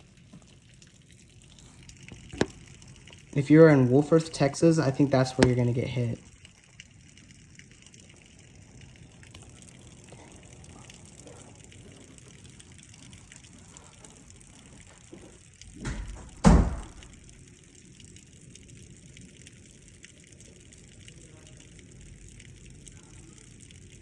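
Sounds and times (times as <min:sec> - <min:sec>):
water running: 0:00.0 - 0:17.9
rain hissing: 0:00.0 - 0:24.0.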